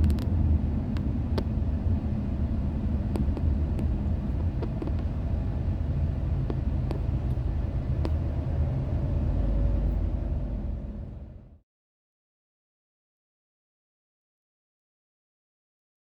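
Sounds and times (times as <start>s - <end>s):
car road and engine rumble: 0.0s - 11.6s.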